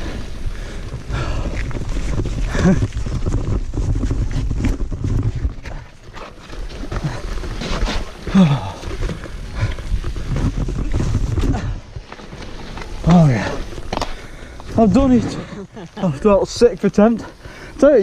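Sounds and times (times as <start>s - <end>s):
bike rattling over rocks: 0.0s - 18.0s
wind on microphone: 6.8s - 12.0s.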